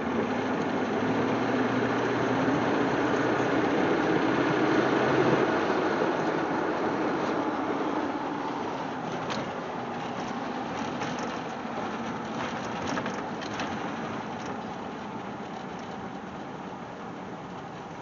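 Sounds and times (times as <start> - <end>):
engine running while driving: 0.0 - 18.0.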